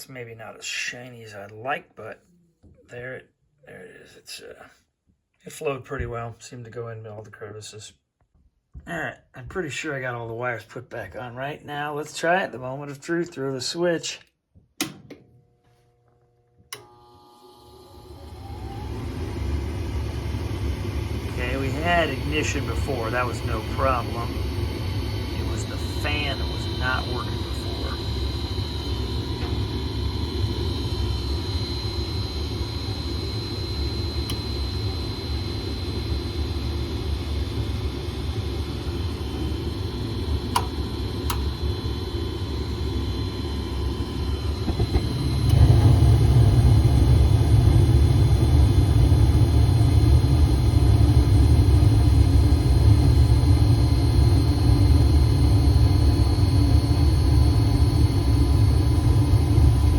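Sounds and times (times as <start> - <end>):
blower fan running: 14.8 - 59.9
gas furnace rumble: 17.9 - 59.9.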